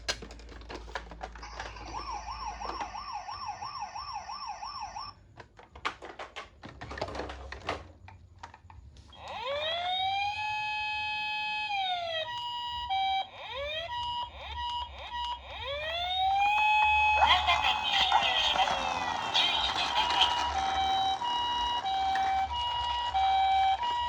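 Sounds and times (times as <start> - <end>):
toy electronic siren: 1.4 - 5.2, 9.1 - 24.0.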